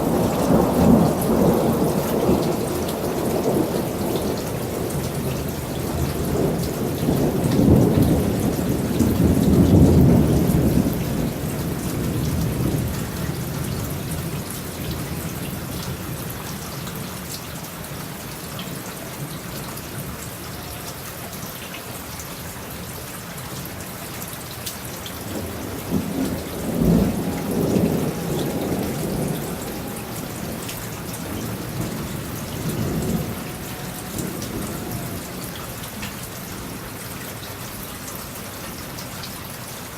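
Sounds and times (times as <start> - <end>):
thunder rumbling: 0.0 - 16.5, 25.2 - 36.8
steady rain falling: 0.0 - 39.9.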